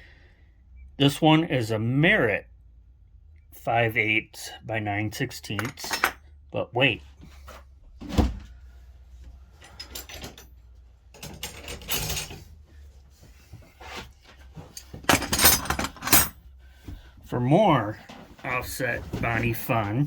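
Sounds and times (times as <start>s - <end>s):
metal wrenches knocking: 5.5s - 6.2s, 14.8s - 16.4s.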